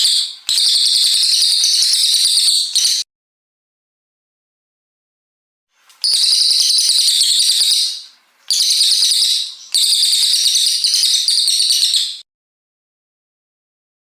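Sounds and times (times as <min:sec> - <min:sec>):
songbird fast high chattering: 0:05.9 - 0:12.2.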